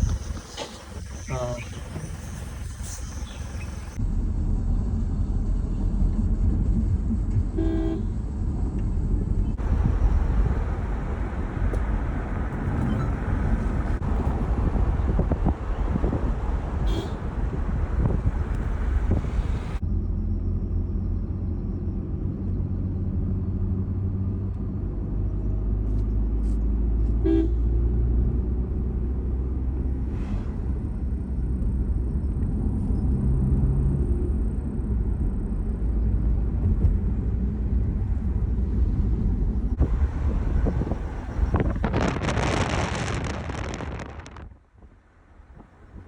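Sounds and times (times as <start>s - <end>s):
car engine and road noise: 0.0s - 46.0s
car horn toot: 7.6s - 8.1s, 16.8s - 17.4s, 27.2s - 27.7s.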